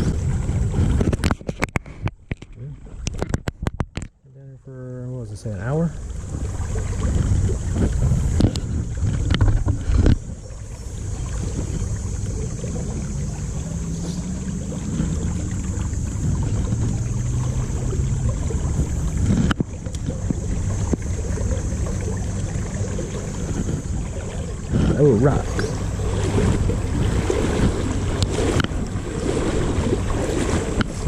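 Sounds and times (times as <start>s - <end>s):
river water splashing: 0.0s - 4.1s, 4.8s - 31.0s
low rumble of wind: 0.0s - 31.0s.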